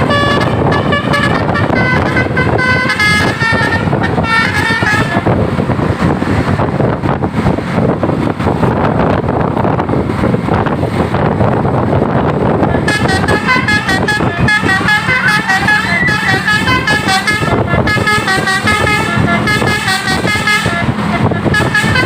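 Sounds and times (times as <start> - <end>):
multi-tone musical air horn: 0.0 - 5.3, 12.8 - 22.0
bus engine running: 0.0 - 22.0.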